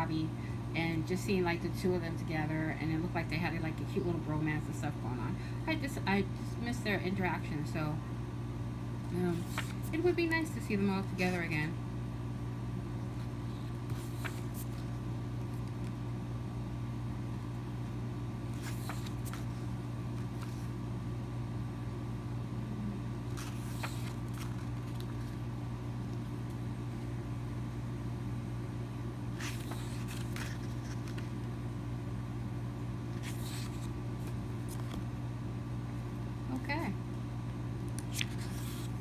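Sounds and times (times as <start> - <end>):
low mechanical hum: 0.0 - 39.0.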